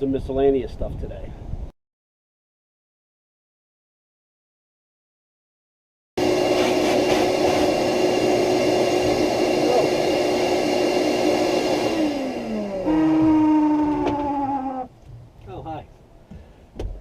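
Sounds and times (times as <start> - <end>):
lower-pitched whir: 6.2 - 14.9
power tool motor whirring: 6.2 - 14.9.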